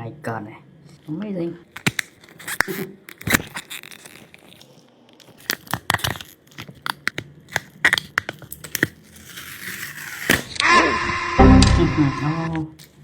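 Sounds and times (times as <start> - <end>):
packaging crinkling and tearing: 1.7 - 10.6, 12.8 - 13.0.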